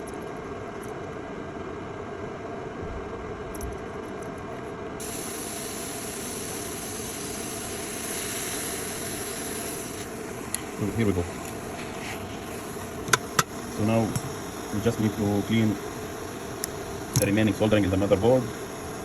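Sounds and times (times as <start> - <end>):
hot-air station blowing: 5.0 - 19.0.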